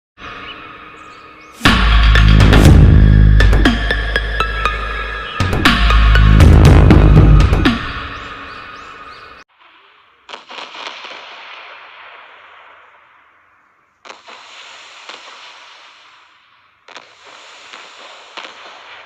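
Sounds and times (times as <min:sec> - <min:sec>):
fireworks bursting: 0:01.6 - 0:03.9, 0:09.4 - 0:19.0
fireworks crackling: 0:09.4 - 0:19.0.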